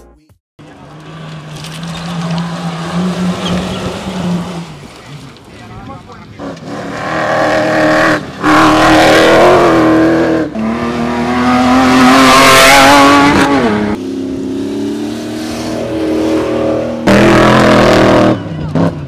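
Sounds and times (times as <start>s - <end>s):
tyre and gravel noise: 0.6s - 6.9s
rally car engines running hard: 0.6s - 19.0s.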